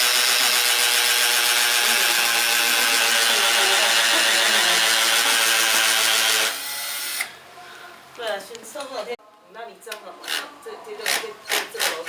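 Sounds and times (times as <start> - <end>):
electric drill boring: 0.0 - 7.3.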